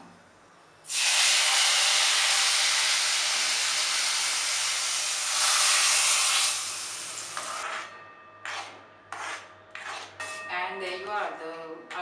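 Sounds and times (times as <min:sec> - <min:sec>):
hot oil sizzling: 0:00.9 - 0:07.7.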